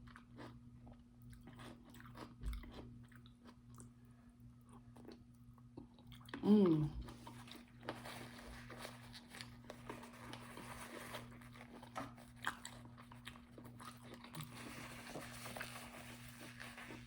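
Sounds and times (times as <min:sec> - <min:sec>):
person chewing: 0:00.0 - 0:04.0, 0:04.6 - 0:17.0.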